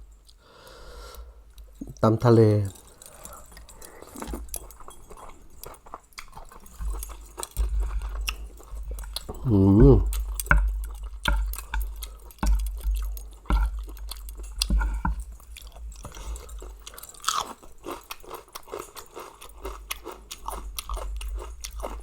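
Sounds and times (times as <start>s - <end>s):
person chewing food: 2.6s - 22.0s.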